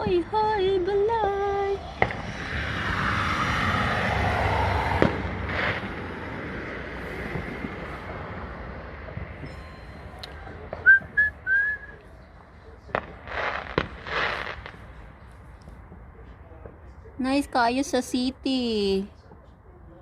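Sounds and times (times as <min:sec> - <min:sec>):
firework whistling: 0:01.8 - 0:08.1, 0:09.2 - 0:12.1, 0:12.9 - 0:15.0
firework bangs and pops: 0:02.0 - 0:02.6, 0:04.9 - 0:06.3, 0:07.2 - 0:08.0, 0:12.9 - 0:15.0.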